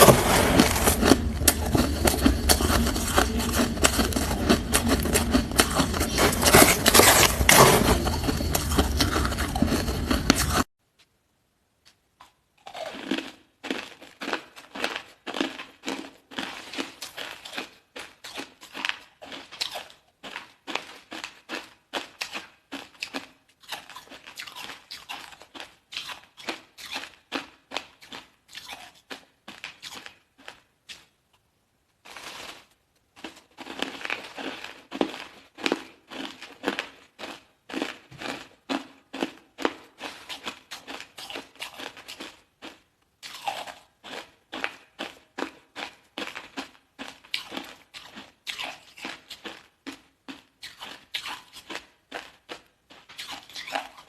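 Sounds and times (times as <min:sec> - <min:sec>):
ice being chewed: 0:00.0 - 0:10.7, 0:33.2 - 0:54.0.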